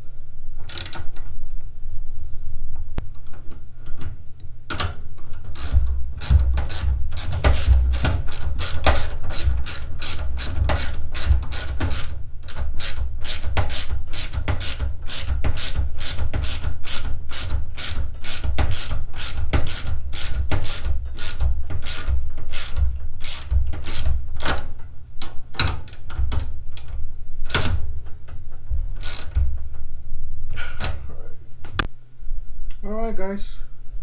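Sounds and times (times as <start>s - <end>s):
ratchet wrench clicking: 0.7s - 1.0s, 5.5s - 24.5s, 29.0s - 29.4s.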